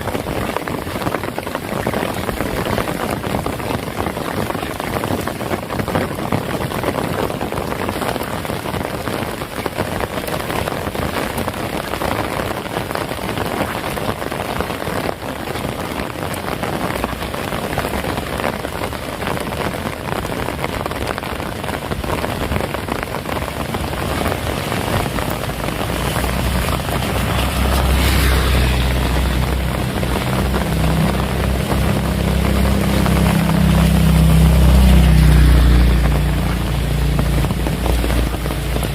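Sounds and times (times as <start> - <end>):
heavy rain: 0.0 - 38.9
low rumble: 21.8 - 38.9.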